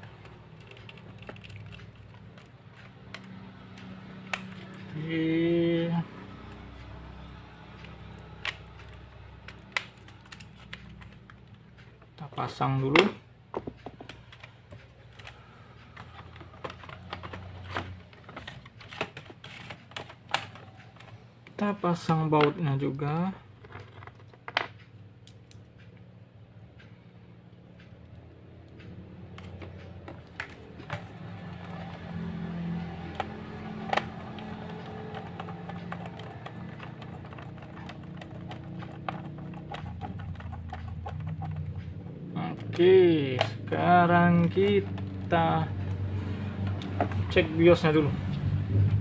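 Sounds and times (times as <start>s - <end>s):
laptop parts clicking and knocking: 0.0s - 4.9s, 7.2s - 12.2s, 12.9s - 21.6s, 22.4s - 25.7s, 28.7s - 47.5s
screwdriver tapping plastic case: 33.0s - 41.7s.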